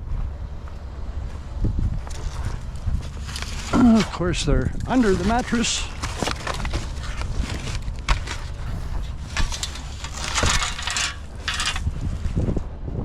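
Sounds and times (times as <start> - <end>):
scraping and rustling: 4.9 - 12.5
metal bed rails clanking: 8.7 - 11.9.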